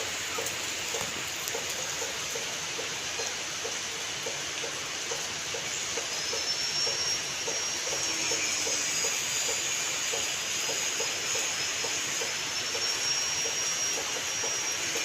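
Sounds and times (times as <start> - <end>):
rain falling: 0.0 - 15.0
thin high wavering tone: 6.0 - 15.0.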